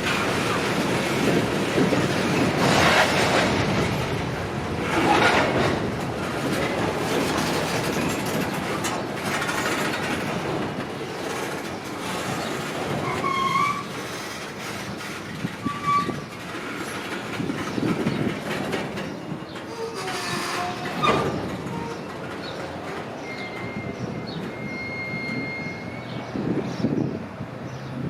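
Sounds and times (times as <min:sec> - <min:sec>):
train cars rumbling clatter: 0:00.0 - 0:28.0
metal-on-metal squeals: 0:13.0 - 0:14.3, 0:15.6 - 0:16.3, 0:19.7 - 0:22.2, 0:23.2 - 0:26.3.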